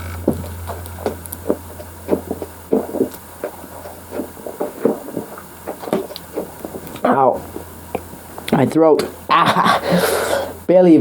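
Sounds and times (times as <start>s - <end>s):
person gulping a drink: 0.2s - 8.5s.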